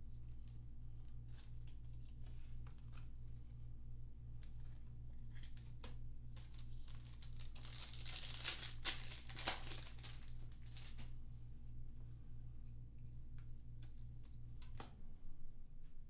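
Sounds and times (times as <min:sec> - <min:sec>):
faint low hum: 0:00.0 - 0:16.0
plastic wrapper crinkling: 0:05.3 - 0:11.1.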